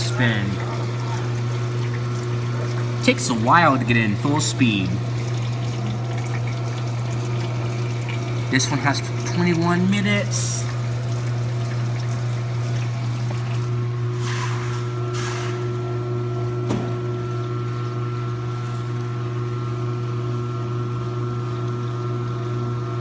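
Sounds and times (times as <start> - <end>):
water swishes: 0.0 - 13.8
water sloshing: 0.0 - 13.9
washing machine motor hum: 0.0 - 23.0.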